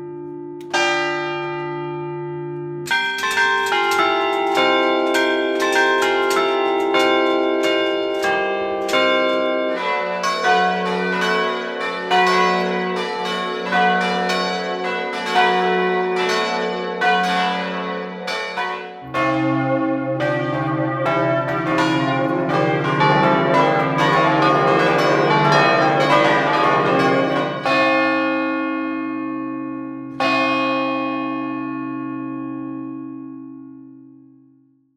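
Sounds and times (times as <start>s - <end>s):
church bells ringing: 0.0s - 34.2s
deep bell strikes: 18.6s - 31.7s.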